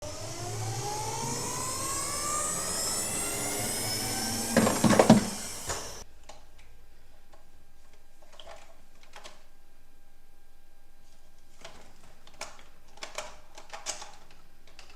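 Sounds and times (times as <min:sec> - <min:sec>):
mechanical whine rising: 0:00.0 - 0:06.0
loud clattering knocks: 0:04.6 - 0:05.9.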